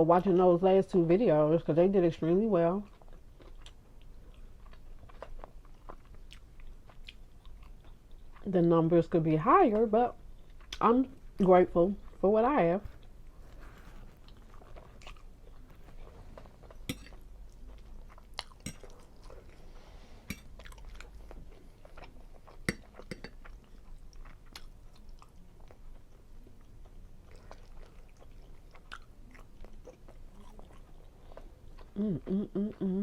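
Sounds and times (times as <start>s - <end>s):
person chewing food: 2.8s - 8.5s, 10.2s - 10.8s, 12.9s - 33.0s.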